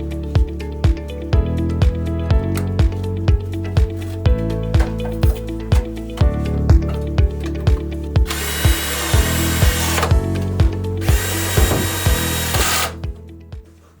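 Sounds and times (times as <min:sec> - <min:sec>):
background music with beat: 0:00.0 - 0:14.0
power drill driving screws: 0:08.3 - 0:10.2, 0:11.0 - 0:13.0.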